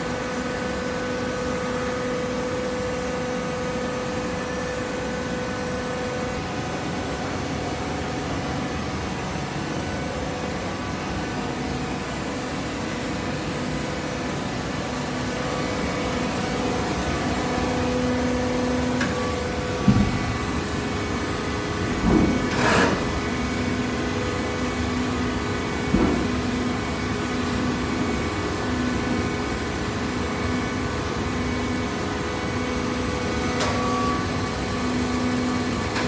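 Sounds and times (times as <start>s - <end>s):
baler machine hum: 0.1s - 36.0s.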